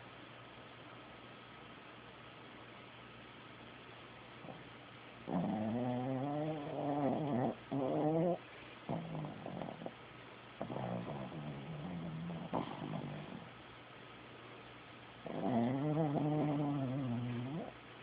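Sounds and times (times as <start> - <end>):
dog snoring: 4.4 - 10.0, 10.6 - 13.5, 15.2 - 17.8.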